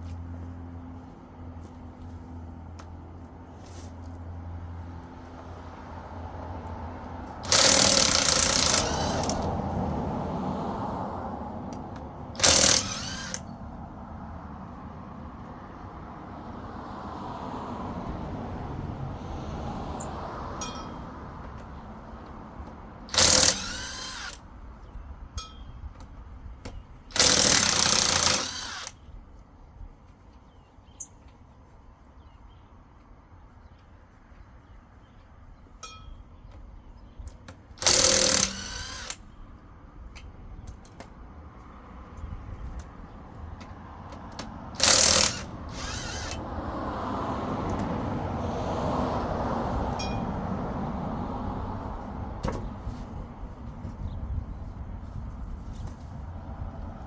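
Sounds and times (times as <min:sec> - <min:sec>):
impact wrench hammering: 0:07.4 - 0:09.5, 0:11.9 - 0:13.4, 0:23.1 - 0:24.4, 0:27.1 - 0:28.9, 0:37.8 - 0:39.2, 0:44.8 - 0:46.4.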